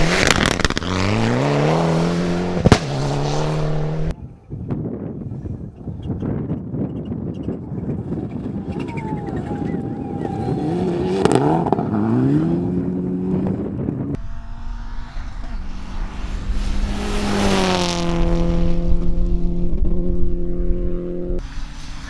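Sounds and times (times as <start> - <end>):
car passing at speed: 0.0 - 4.1, 14.2 - 22.0
rally car engine accelerating: 0.0 - 4.1, 10.2 - 22.0.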